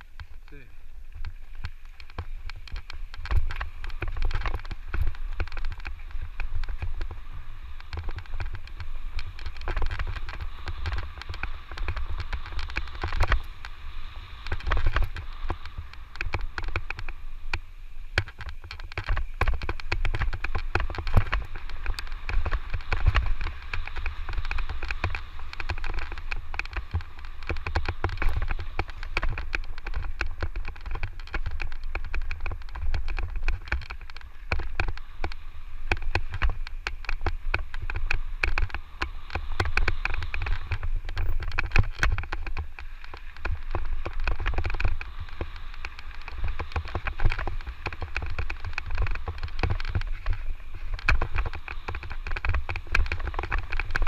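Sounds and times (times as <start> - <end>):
bike rattling over rough trail: 0.0 - 54.0
wind on microphone: 0.0 - 54.0.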